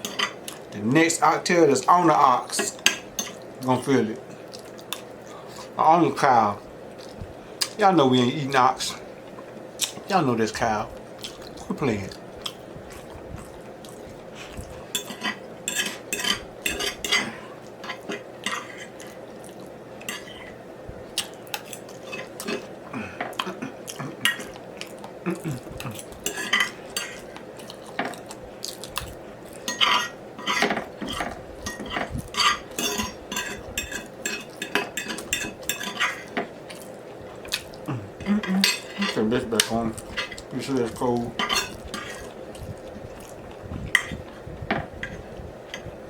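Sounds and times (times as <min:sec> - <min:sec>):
cutlery clinking on plate: 0:15.0 - 0:18.9, 0:29.6 - 0:36.5, 0:41.4 - 0:42.2.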